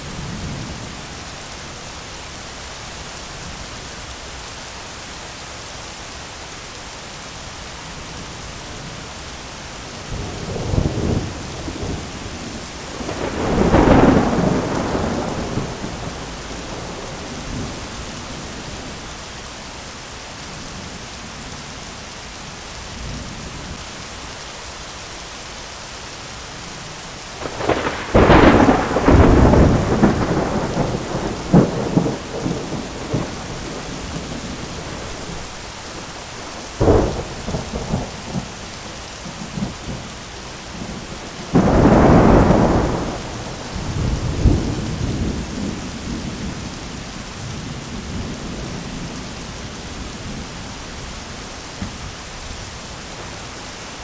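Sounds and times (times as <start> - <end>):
heavy rain: 0.0 - 54.0
thunder: 10.2 - 18.2, 27.4 - 35.5, 40.8 - 49.2.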